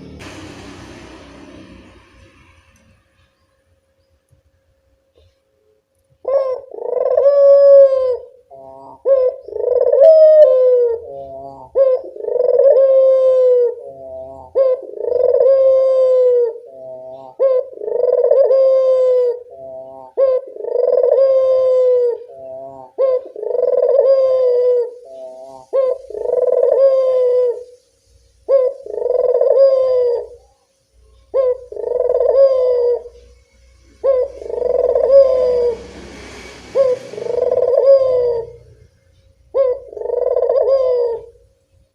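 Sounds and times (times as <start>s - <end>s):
dove cooing: 6.2s - 27.8s, 28.5s - 30.5s, 31.1s - 36.0s, 36.7s - 38.9s, 39.5s - 41.5s.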